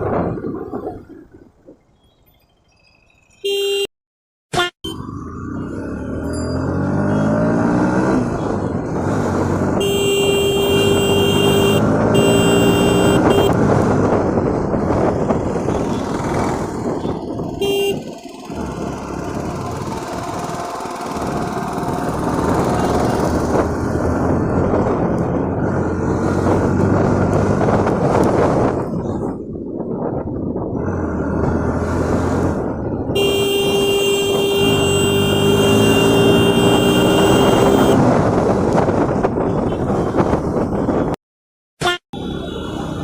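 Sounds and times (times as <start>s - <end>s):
vehicle horn: 3.4s - 3.9s, 9.8s - 13.6s, 17.0s - 18.1s, 33.2s - 38.0s, 41.8s - 42.8s
motorcycle engine accelerating: 4.9s - 28.9s, 30.6s - 39.3s.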